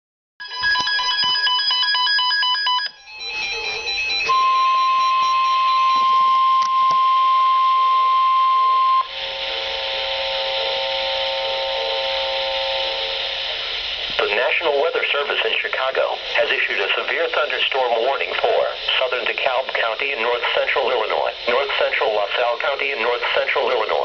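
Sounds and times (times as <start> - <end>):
electronic beeps: 0.4 - 9.1
low steady tones: 3.0 - 24.0.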